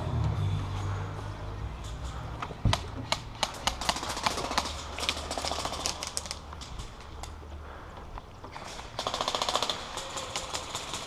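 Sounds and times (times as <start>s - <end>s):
airsoft guns firing: 2.7s - 6.4s, 9.0s - 11.0s.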